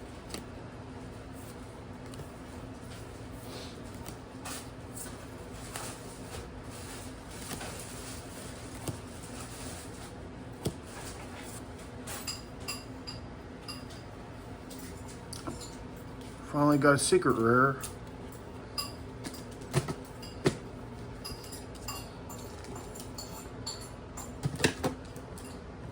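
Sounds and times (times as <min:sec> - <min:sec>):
wrappers rustling: 0:01.3 - 0:11.7.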